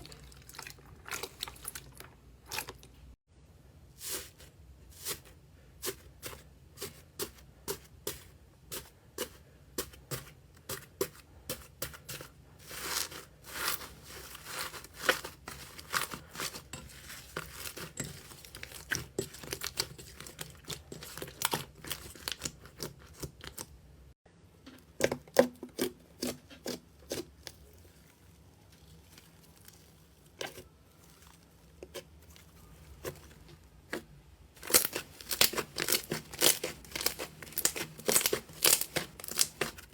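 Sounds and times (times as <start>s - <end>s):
slime squelching with sticky pops: 34.6s - 39.9s.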